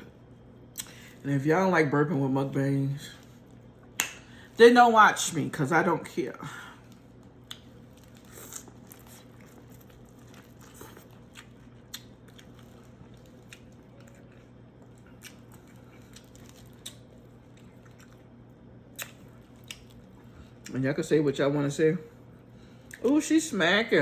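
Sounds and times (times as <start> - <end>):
faint steady hum: 0.0 - 24.0
person chewing with smacking lips: 6.8 - 20.7.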